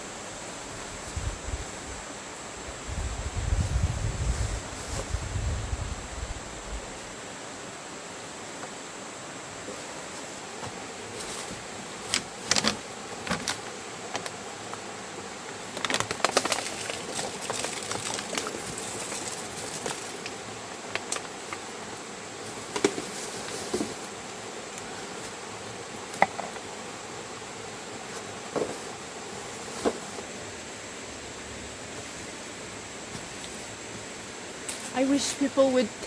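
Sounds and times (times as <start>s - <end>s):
steady hiss: 0.0s - 36.0s
litter crinkling in hands: 12.1s - 14.8s, 15.7s - 21.7s.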